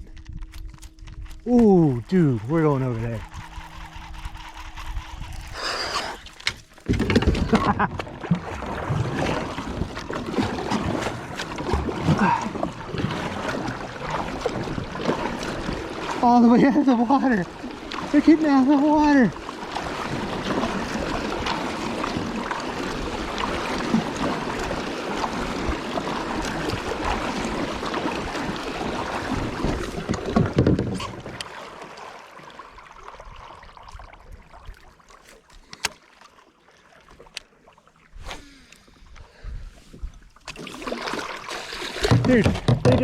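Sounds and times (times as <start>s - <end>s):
water around a kayak: 0.0s - 43.0s
wind: 0.0s - 43.0s
sharp clicks and knocks: 42.0s - 43.0s.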